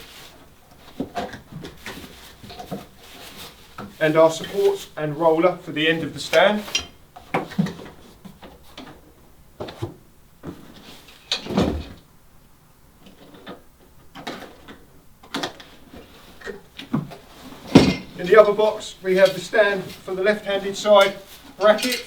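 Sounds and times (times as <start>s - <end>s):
parts knocking and clunking: 13.1s - 22.0s.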